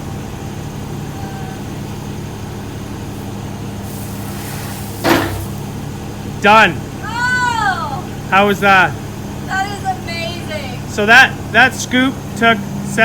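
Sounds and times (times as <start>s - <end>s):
excavator engine running: 0.0s - 13.0s
brief noisy burst: 3.9s - 5.7s.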